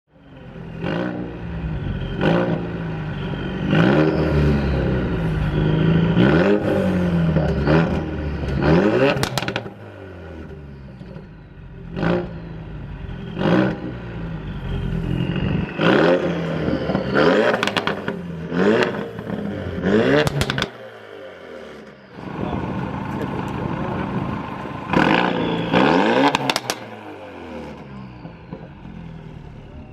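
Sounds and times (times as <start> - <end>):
car engine revving: 0.3 - 29.9
exhaust crackles and pops: 8.5 - 9.8, 17.0 - 19.5, 20.1 - 20.8, 22.2 - 27.0.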